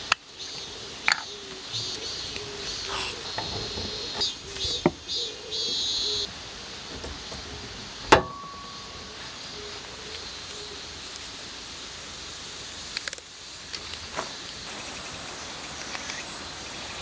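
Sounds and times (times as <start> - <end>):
insects buzzing: 0.0 - 17.0
sharp knock with ringing tone: 8.1 - 8.8.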